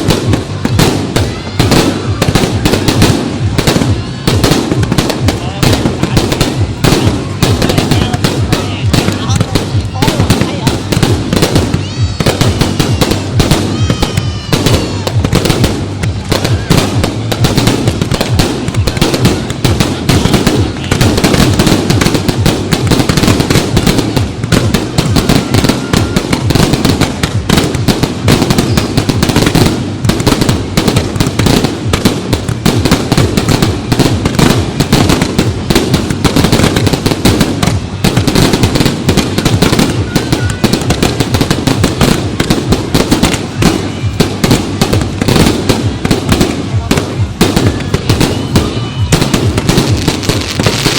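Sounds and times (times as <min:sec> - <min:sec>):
fireworks bangs and crackling: 0:00.0 - 0:50.9
fireworks whistles: 0:00.0 - 0:50.9.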